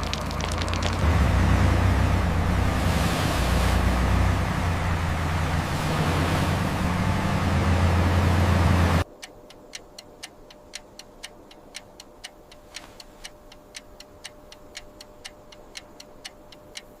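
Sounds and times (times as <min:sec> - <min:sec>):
truck engine running: 0:00.0 - 0:09.0
sharp ticks: 0:09.0 - 0:17.0.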